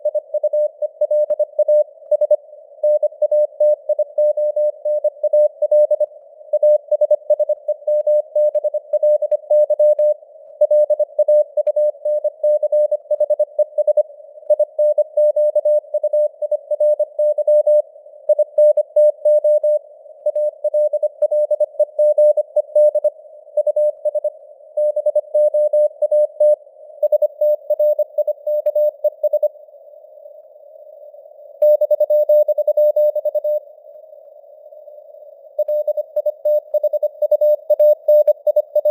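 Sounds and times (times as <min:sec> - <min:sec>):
morse code tone: 0:35.6 - 0:38.9.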